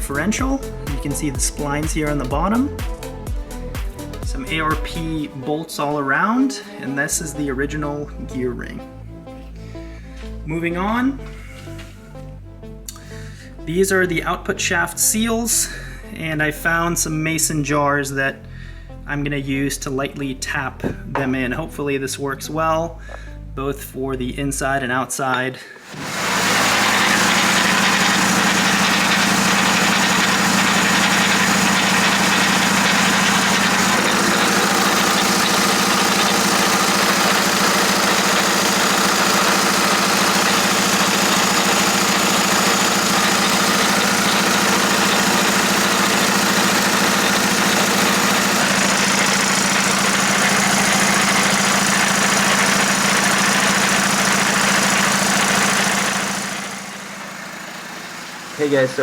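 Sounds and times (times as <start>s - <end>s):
diesel engine running: 0.0s - 5.4s, 25.8s - 59.0s
transmission grinding noise: 25.9s - 59.0s.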